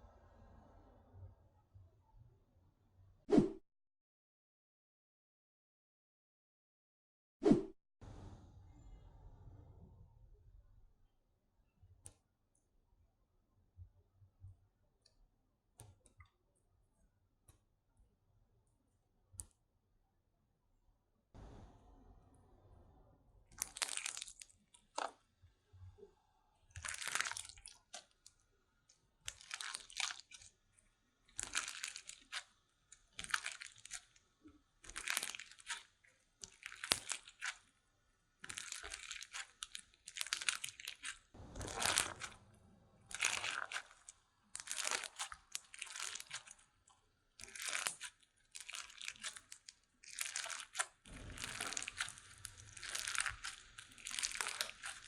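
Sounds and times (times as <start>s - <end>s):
slime squeezed by hand: 23.5s - 25.2s, 38.4s - 46.6s, 47.4s - 55.0s.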